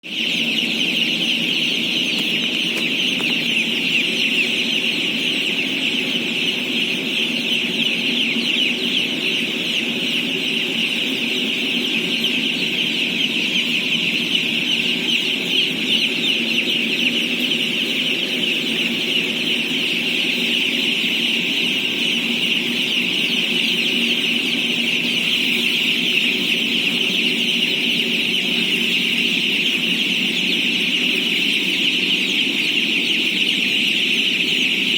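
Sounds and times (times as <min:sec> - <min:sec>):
chicks chirping: 0:00.0 - 0:34.9.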